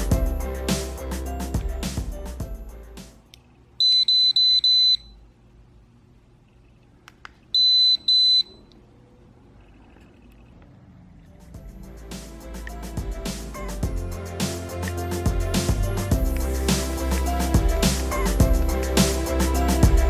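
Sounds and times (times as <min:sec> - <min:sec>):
background music: 0:00.0 - 0:03.3, 0:11.4 - 0:20.0.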